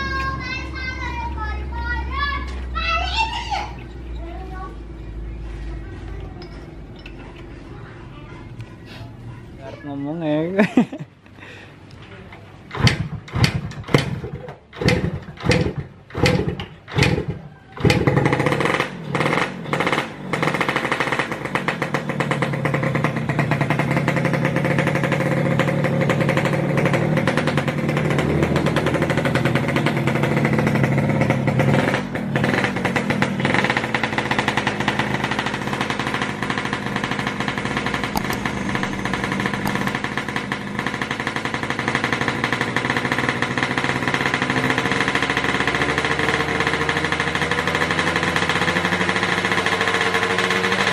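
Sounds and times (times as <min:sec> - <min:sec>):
two-stroke engine starting and running: 0:12.6 - 0:50.9.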